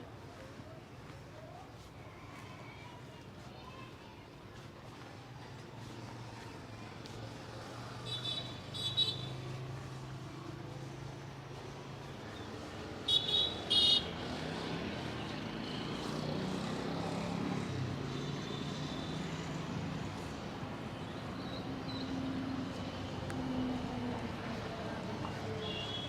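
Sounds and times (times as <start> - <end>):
passing traffic hum: 3.0 - 26.0
vehicle horn toots: 13.1 - 14.1, 25.6 - 26.0.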